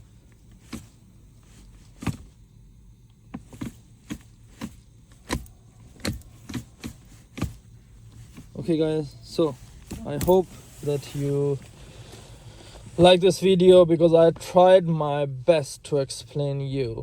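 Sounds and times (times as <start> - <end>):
faint low hum: 0.0 - 17.0
gear selector lever clicks: 1.9 - 2.4, 3.0 - 8.6.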